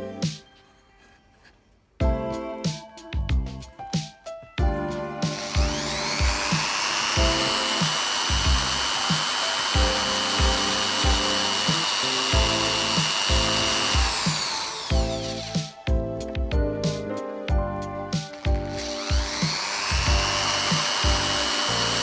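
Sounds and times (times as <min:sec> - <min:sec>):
background music with beat: 0:00.0 - 0:01.1, 0:02.0 - 0:22.0
power tool motor whine: 0:05.3 - 0:15.7, 0:18.3 - 0:22.0.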